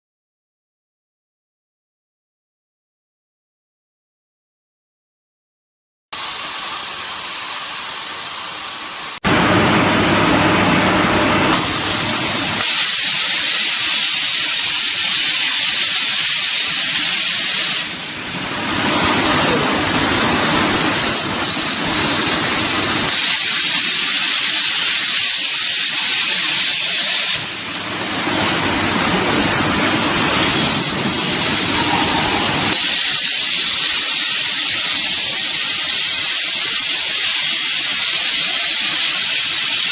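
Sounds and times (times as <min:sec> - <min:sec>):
plasma torch cutting metal: 0:06.2 - 0:09.2, 0:11.5 - 0:39.9.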